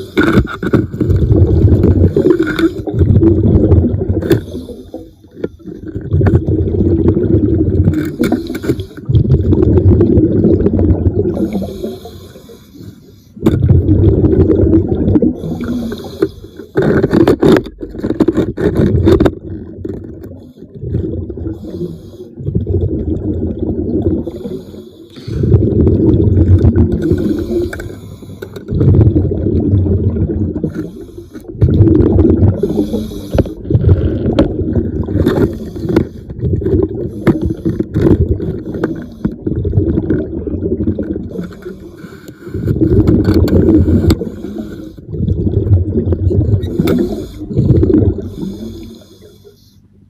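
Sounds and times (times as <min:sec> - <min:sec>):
exhaled air bubbling underwater: 0:00.0 - 0:50.0
diver inhaling hiss: 0:11.5 - 0:13.2, 0:32.6 - 0:33.6, 0:43.8 - 0:45.0, 0:46.7 - 0:47.6, 0:48.2 - 0:49.8.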